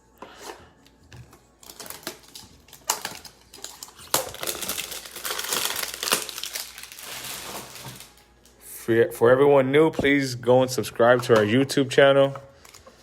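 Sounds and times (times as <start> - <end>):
plastic wrapper crinkling: 1.2 - 8.6.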